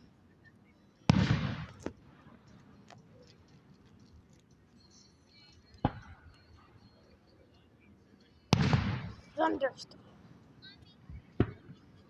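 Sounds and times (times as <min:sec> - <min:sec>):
fireworks bursting: 0:01.1 - 0:02.2, 0:08.5 - 0:09.6.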